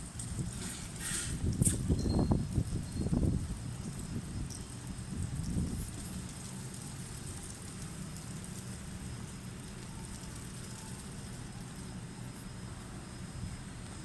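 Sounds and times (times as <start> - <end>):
strong wind rumbling: 0.0 - 5.9.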